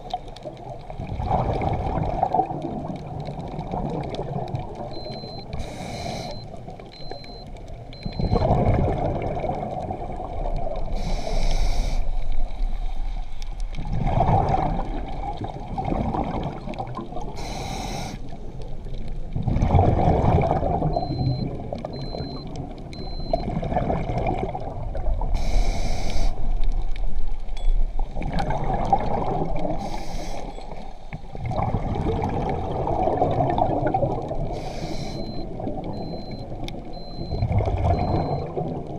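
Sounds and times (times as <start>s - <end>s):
underwater water churning: 0.0s - 38.9s
faint high beeps: 4.9s - 8.5s, 20.9s - 23.5s, 34.6s - 38.6s
short hissing burst: 11.0s - 12.1s, 17.4s - 18.2s, 25.4s - 26.4s, 34.6s - 35.2s.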